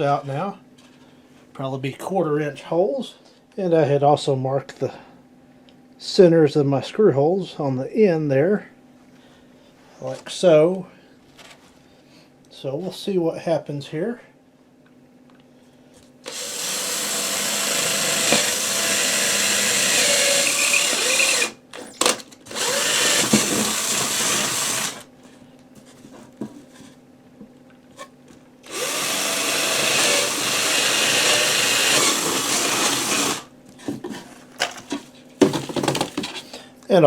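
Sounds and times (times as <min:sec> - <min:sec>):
power drill boring plywood: 0:16.2 - 0:25.1, 0:28.6 - 0:33.5.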